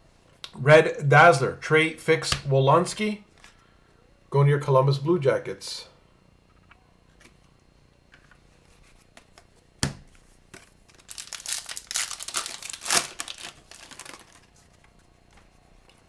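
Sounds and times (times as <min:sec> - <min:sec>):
sharp wrapper snap: 0:10.9 - 0:14.4
card pack wrapper tearing: 0:10.9 - 0:14.7
dense crackling of wrapper: 0:10.9 - 0:14.8.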